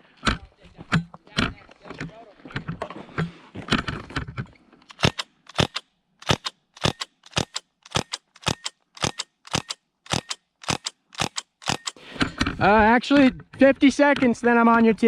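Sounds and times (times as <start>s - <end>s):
airsoft gun shots: 4.9s - 12.0s.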